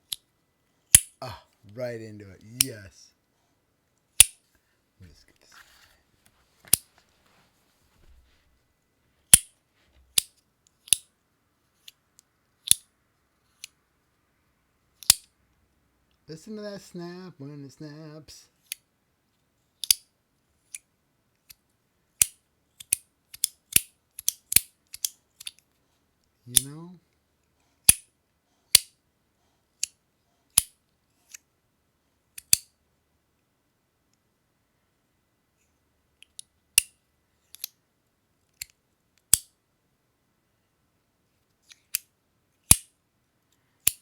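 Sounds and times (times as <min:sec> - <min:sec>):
fidget toy clicking snaps: 0:00.9 - 0:01.2, 0:04.2 - 0:04.4, 0:10.2 - 0:11.1, 0:12.6 - 0:12.9, 0:19.8 - 0:20.0, 0:22.2 - 0:25.6, 0:27.8 - 0:28.1, 0:32.4 - 0:32.7, 0:42.7 - 0:42.9.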